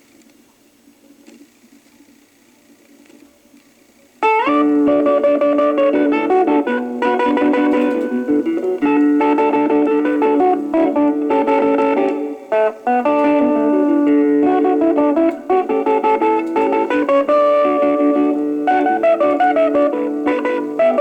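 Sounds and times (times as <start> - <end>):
record surface hiss: 0.0 - 21.0
electric guitar melody: 4.2 - 21.0.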